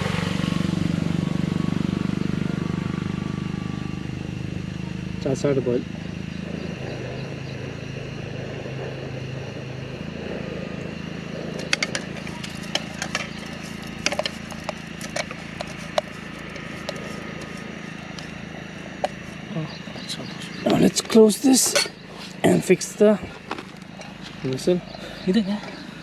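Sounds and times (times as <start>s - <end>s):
sharp metal clinks: 20.7s - 23.1s.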